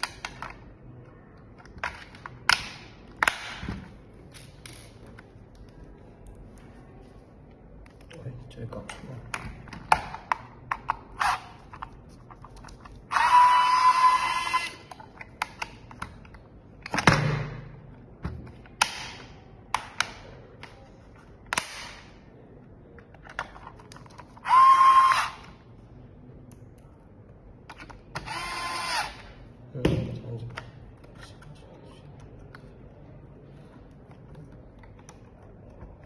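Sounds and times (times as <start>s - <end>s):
electric screwdriver whining: 13.1s - 14.7s, 24.4s - 25.4s, 28.2s - 29.2s.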